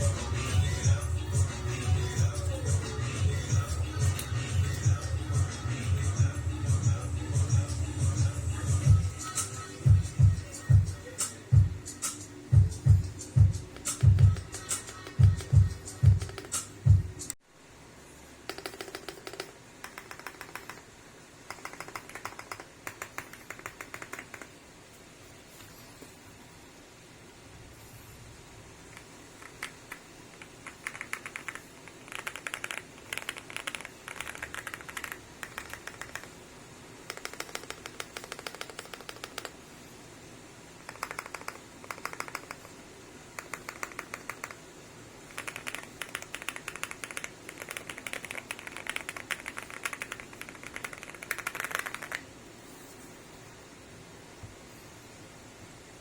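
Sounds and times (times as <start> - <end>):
mechanical keyboard typing: 13.7 - 16.7, 18.5 - 20.9, 21.5 - 24.6, 28.9 - 36.4, 37.1 - 39.6, 40.8 - 42.8, 43.4 - 44.6, 45.3 - 52.3.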